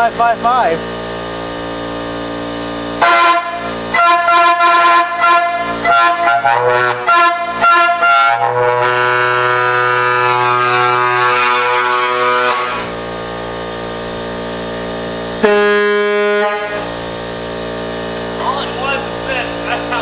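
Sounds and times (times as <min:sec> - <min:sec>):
louder horn blast different pitch: 0:03.0 - 0:13.0, 0:15.4 - 0:17.0
air horns sounding chord: 0:03.0 - 0:13.1, 0:15.3 - 0:17.1.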